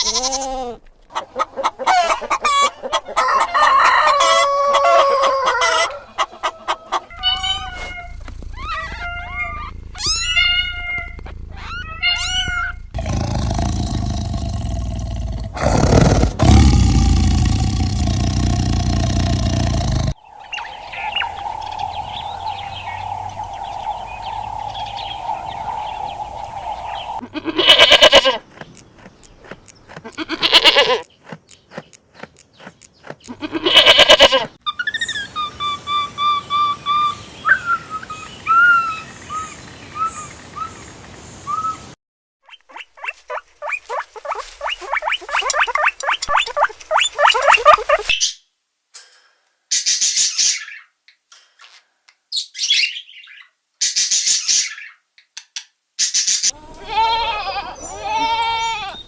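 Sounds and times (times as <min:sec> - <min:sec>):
steady high animal call: 0:11.6 - 0:28.4, 0:42.7 - 0:48.2
rapid repeated calls: 0:13.0 - 0:34.3, 0:42.7 - 0:48.2.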